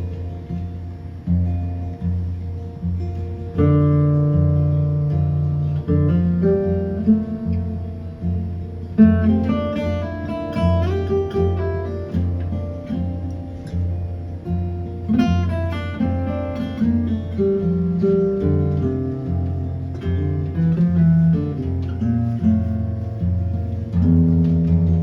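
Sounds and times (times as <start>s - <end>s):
acoustic guitar strumming: 0.0s - 25.0s
bass notes: 16.9s - 25.0s.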